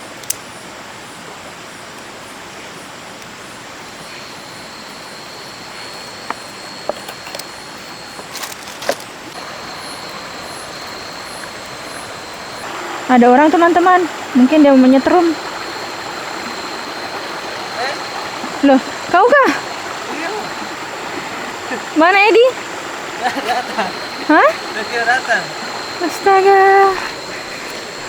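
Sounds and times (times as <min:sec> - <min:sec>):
thin high steady tone: 0:04.0 - 0:28.0
flowing river rushing: 0:09.3 - 0:28.0.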